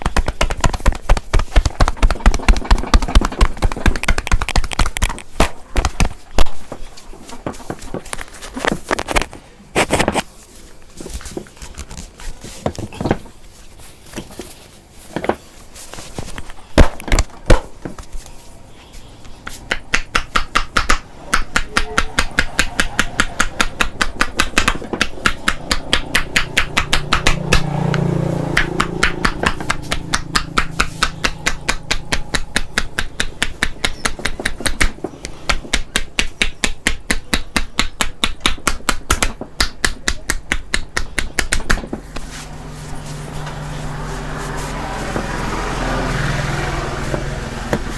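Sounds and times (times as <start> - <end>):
sharp slaps: 0.0 - 6.6, 19.3 - 42.4
hands striking body rhythmically: 0.0 - 8.2, 19.2 - 47.9.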